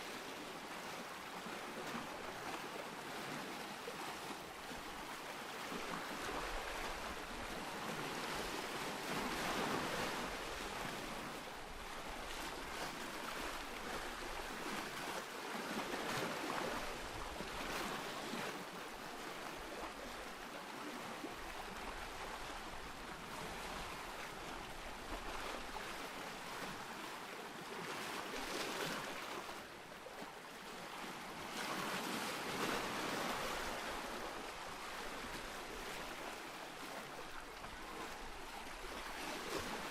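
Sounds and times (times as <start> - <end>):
waves breaking: 0.0 - 39.9.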